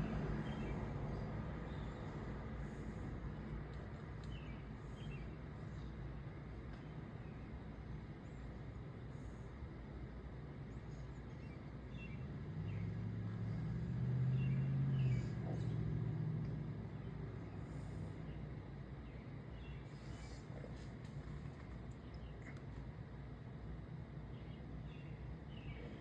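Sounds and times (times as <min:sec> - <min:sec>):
vehicle passing by: 0:00.0 - 0:05.0, 0:11.9 - 0:18.8
low outdoor background: 0:00.0 - 0:26.0.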